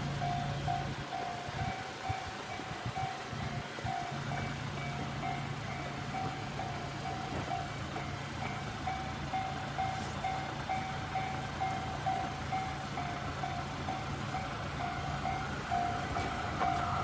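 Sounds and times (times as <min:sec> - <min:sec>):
level crossing bell ringing: 0:00.2 - 0:17.0.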